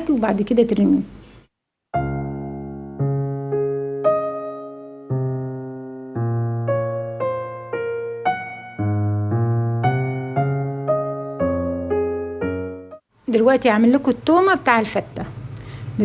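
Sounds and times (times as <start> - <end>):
slow electric piano melody: 1.9 - 13.1.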